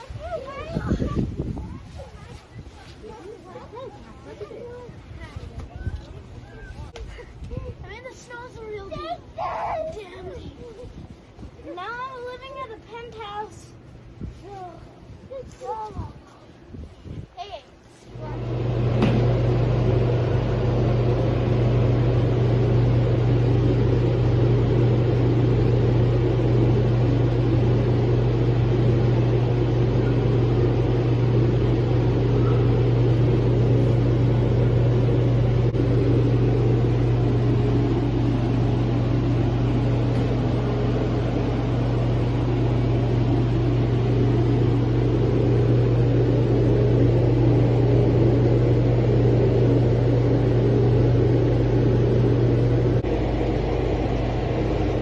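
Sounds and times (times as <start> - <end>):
engine drone: 18.1 - 55.0.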